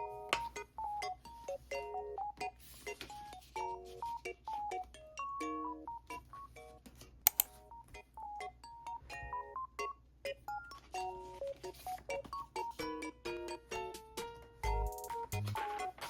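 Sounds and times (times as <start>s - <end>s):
cheerful plinking background music: 0.0s - 16.0s
sharp clicks: 7.3s - 7.5s.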